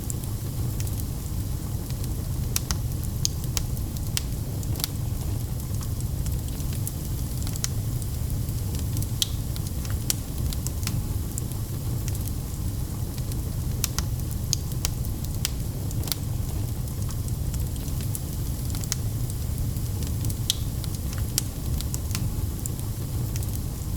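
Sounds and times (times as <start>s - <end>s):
wood fire crackling: 0.0s - 23.9s
sharp pops and snaps: 2.0s - 5.0s, 8.7s - 12.3s, 13.2s - 16.3s, 17.0s - 22.8s.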